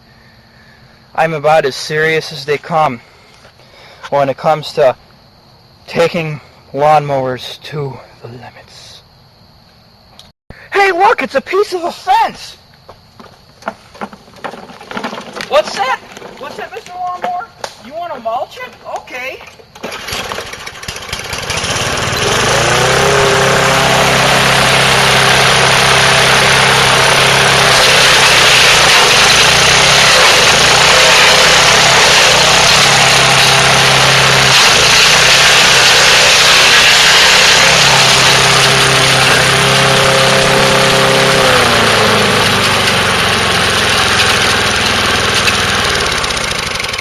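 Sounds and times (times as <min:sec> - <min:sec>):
lawn mower engine running: 0:13.2 - 0:17.7, 0:19.7 - 0:47.0
mower blade grinding wood: 0:13.2 - 0:19.0, 0:19.8 - 0:47.0.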